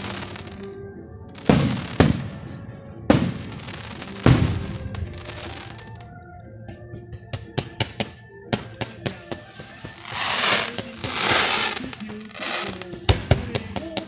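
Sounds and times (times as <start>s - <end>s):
firework bangs: 0.0s - 0.6s, 1.4s - 6.0s, 7.6s - 14.0s
fireworks crackling and hissing: 0.0s - 0.7s, 1.4s - 6.1s, 8.7s - 14.0s.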